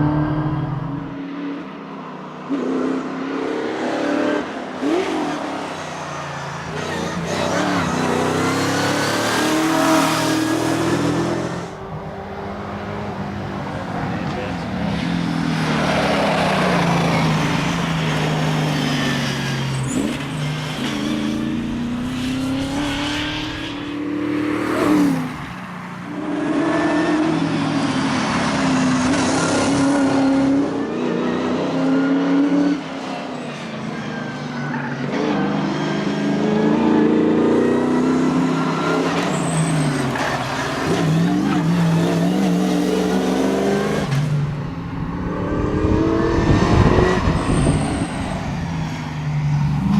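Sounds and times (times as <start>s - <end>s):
car engine revving: 6.6s - 13.1s, 13.8s - 25.5s, 35.1s - 44.4s, 45.0s - 48.5s.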